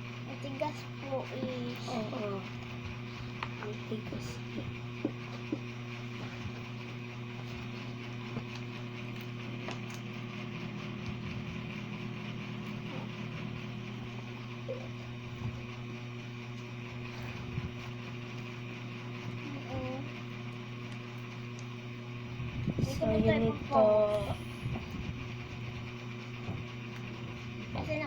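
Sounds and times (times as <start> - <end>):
mechanical hum: 0.0 - 28.0
faint clicks and taps: 2.6 - 6.7.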